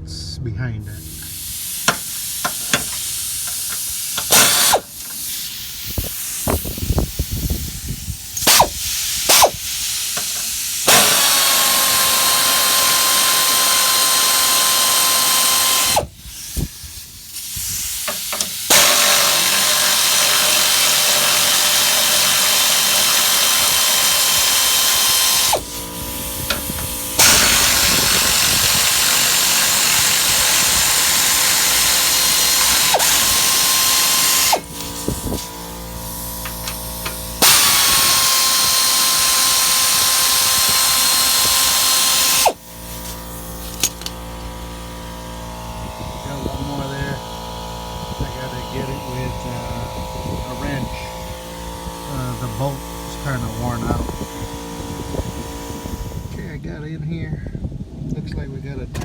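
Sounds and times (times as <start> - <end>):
power drill running: 1.2 - 5.2, 8.3 - 16.2, 17.6 - 56.3
tools knocking and clicking: 1.9 - 4.6, 18.1 - 18.9.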